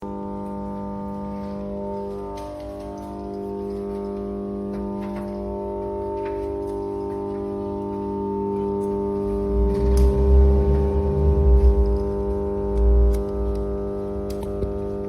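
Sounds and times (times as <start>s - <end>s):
transformer hum: 0.0s - 15.0s
low rumble with thumps: 8.4s - 15.0s.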